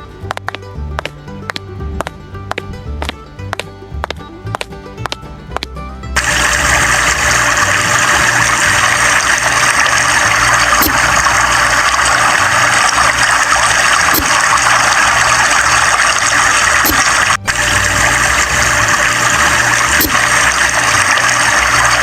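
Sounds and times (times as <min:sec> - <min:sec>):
low uneven hum: 0:00.0 - 0:22.0
water rushing: 0:06.2 - 0:22.0.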